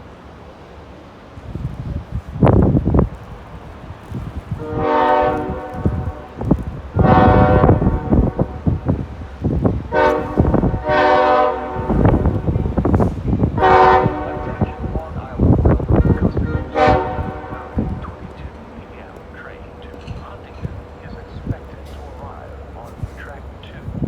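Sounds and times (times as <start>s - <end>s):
train wheels rumbling and clattering: 0.0s - 24.0s
train horn blasts: 4.5s - 9.0s, 9.7s - 18.5s.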